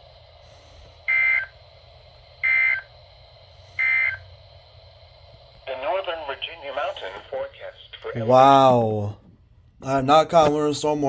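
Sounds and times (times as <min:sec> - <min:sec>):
buzzing two-tone data bursts: 0:01.1 - 0:01.5, 0:02.4 - 0:02.9, 0:03.8 - 0:04.3.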